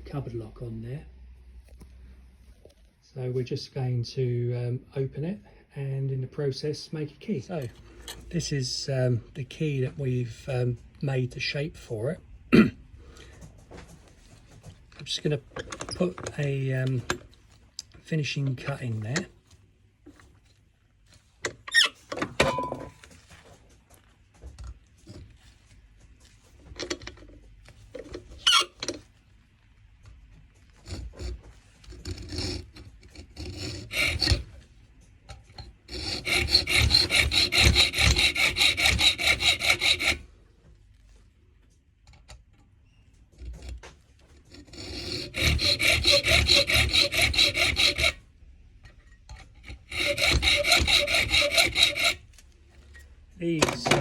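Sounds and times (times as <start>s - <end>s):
file rasping on metal key: 28.0s - 29.0s, 30.6s - 34.6s, 35.4s - 40.3s, 43.4s - 48.2s, 48.9s - 52.4s.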